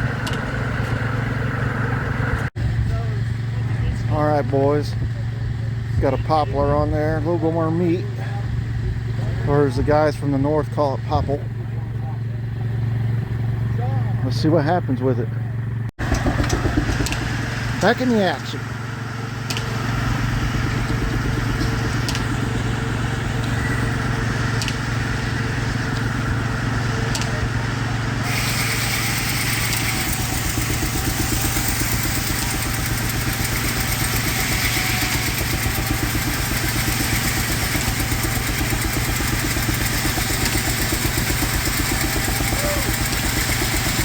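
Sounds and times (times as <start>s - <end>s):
circular saw cutting log: 16.0s - 44.0s.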